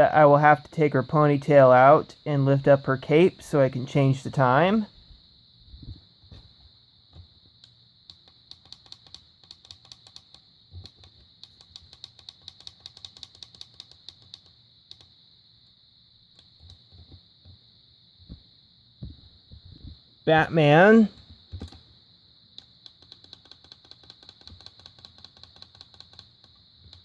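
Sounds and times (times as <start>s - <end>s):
faint high whine: 0.0s - 12.0s, 13.8s - 23.2s.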